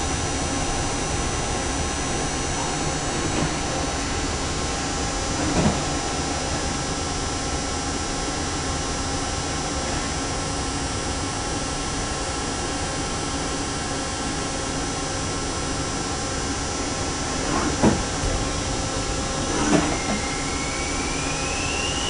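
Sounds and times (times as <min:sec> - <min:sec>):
lathe whirring hiss: 0:16.4 - 0:22.0
faint high whine: 0:17.0 - 0:22.0.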